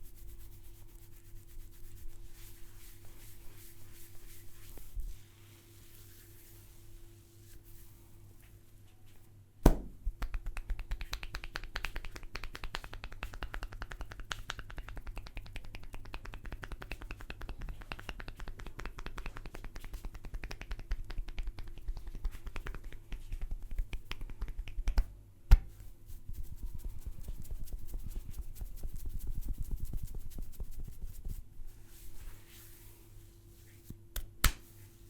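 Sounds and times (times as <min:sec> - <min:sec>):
hand taps and claps on head: 0:09.6 - 0:25.8, 0:34.2 - 0:34.7.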